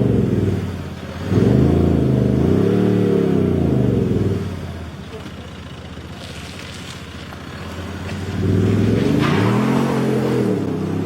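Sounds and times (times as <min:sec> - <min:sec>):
synthetic engine revving through speaker: 0:08.4 - 0:11.0.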